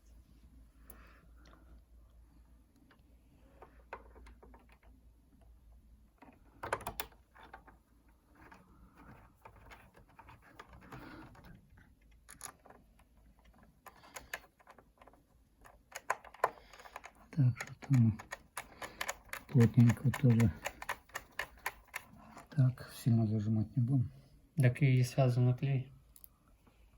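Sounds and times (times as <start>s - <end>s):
small screws clicking and tapping: 8.4s - 22.6s.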